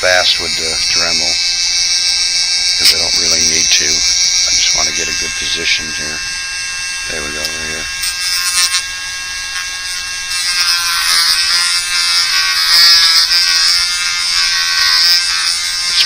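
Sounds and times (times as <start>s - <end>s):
sanding disc grinding plastic: 0.0s - 6.2s, 9.5s - 16.0s
rotary tool whine: 0.0s - 16.0s.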